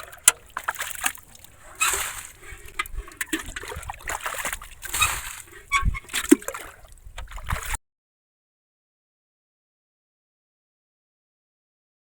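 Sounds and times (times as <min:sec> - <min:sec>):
shallow water splashing: 0:00.0 - 0:07.8.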